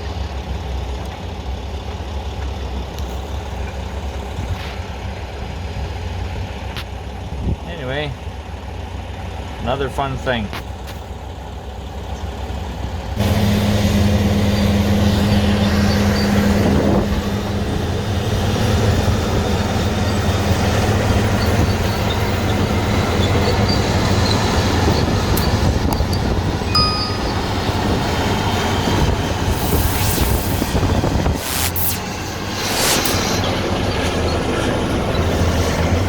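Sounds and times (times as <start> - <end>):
heavy diesel engine droning: 11.1 - 36.0.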